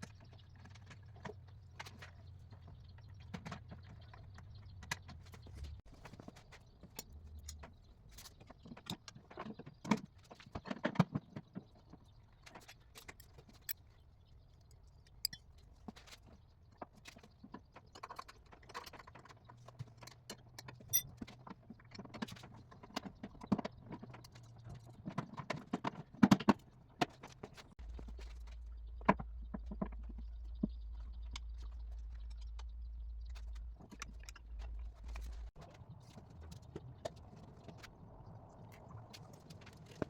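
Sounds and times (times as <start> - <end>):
steady low hum: 27.8 - 35.6.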